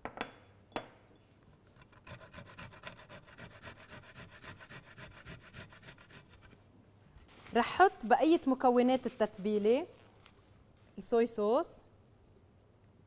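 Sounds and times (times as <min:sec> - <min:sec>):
garlic grated on hand grater: 0:01.8 - 0:06.5.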